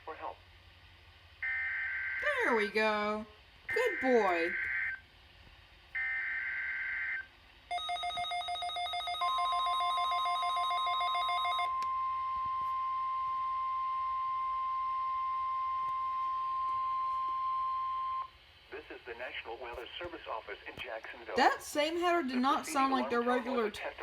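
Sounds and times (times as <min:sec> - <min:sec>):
steady warning alarm tone: 0:01.4 - 0:05.0, 0:05.9 - 0:18.4.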